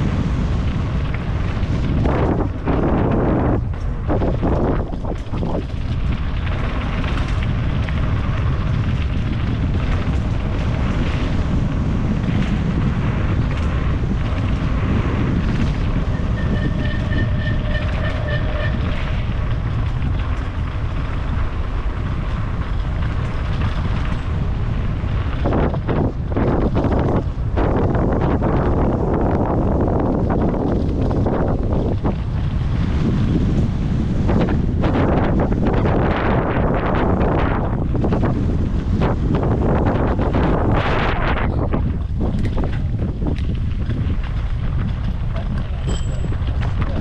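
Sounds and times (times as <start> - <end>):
loud rumble: 0.0 - 47.0
wind buffeting microphone: 0.0 - 47.0.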